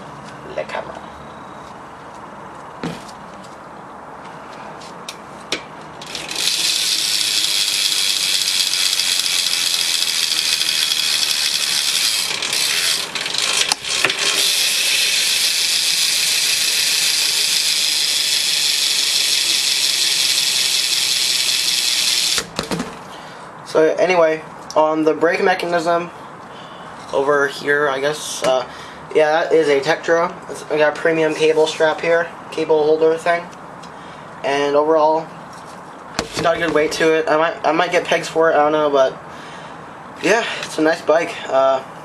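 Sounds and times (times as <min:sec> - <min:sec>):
bike hub freewheeling buzz: 0:05.9 - 0:22.5.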